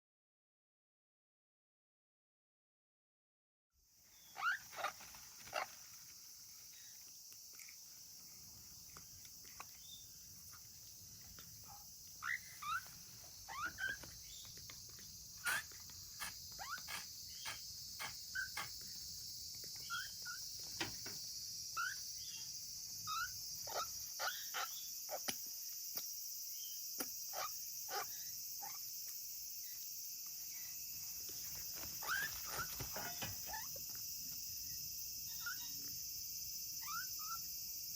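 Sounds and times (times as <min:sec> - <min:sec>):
parrot chick chirping and whistling: 0:04.2 - 0:05.0, 0:12.2 - 0:14.4, 0:19.8 - 0:20.4, 0:32.0 - 0:33.7, 0:36.8 - 0:37.4.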